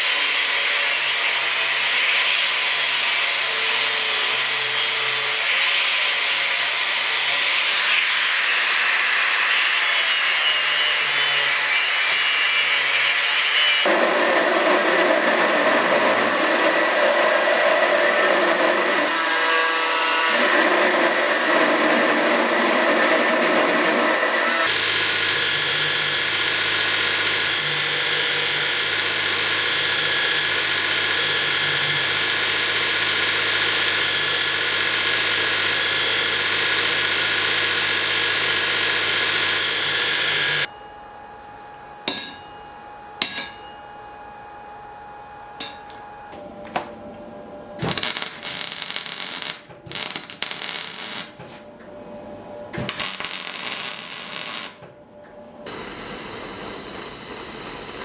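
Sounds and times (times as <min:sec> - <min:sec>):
power tool running: 0:13.8 - 0:40.7, 0:47.8 - 0:51.4, 0:52.8 - 0:54.8, 0:55.7 - 0:58.0.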